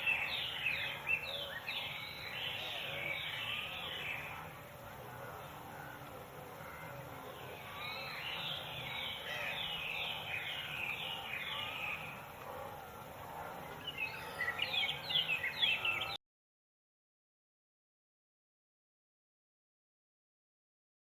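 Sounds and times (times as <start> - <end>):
birds chirping: 0.0 - 16.2
outdoor background hiss: 0.0 - 16.2.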